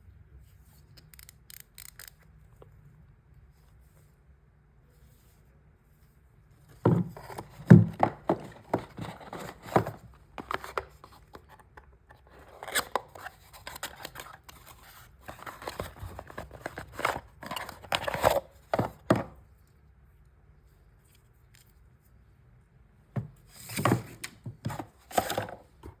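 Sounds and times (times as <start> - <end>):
cardboard and plastic rustling: 6.7 - 19.4, 23.2 - 26.0
packaging clicks and scrapes: 7.1 - 19.2, 23.6 - 26.0.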